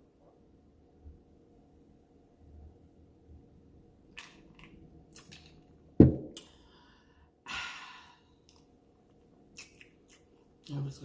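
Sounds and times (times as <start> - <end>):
loud low thump: 6.0 - 6.4
breathy exhale: 6.5 - 8.3
chewing clicks and crunches: 9.6 - 10.7.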